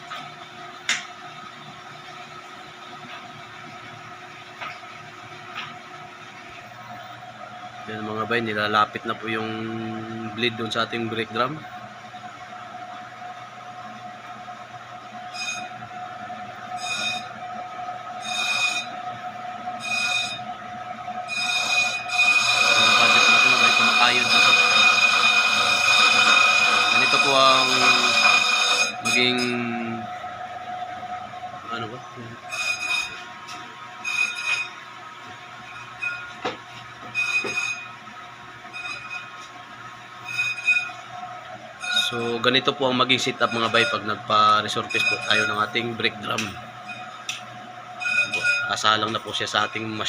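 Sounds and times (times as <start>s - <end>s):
brake lathe humming: 15.0s - 50.0s
cutting bit squealing: 16.8s - 17.3s, 18.2s - 18.9s, 19.8s - 20.4s, 21.3s - 29.7s, 32.2s - 33.2s, 34.0s - 34.7s, 37.1s - 37.9s, 40.2s - 41.0s, 41.8s - 42.6s, 43.2s - 47.2s, 48.0s - 48.9s.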